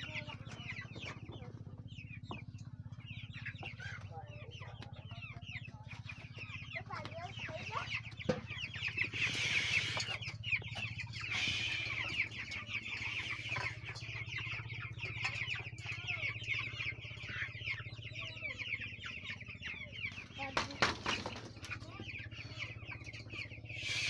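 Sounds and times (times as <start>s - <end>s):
chickens cheeping and clucking: 0.0s - 24.0s
steady low hum: 0.1s - 20.8s, 21.8s - 24.0s.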